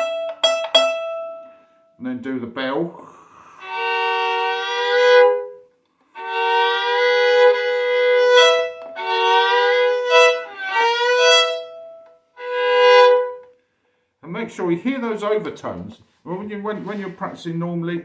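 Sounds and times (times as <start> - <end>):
violin bowing double stops: 0.0 - 1.7, 3.6 - 13.6.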